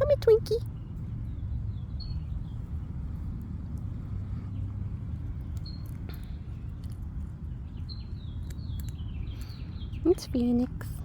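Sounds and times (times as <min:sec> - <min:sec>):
steady low rumble: 0:00.0 - 0:11.0
rabbits chewing crunching: 0:05.1 - 0:09.6
high bird chirp: 0:05.6 - 0:06.7, 0:07.5 - 0:10.5.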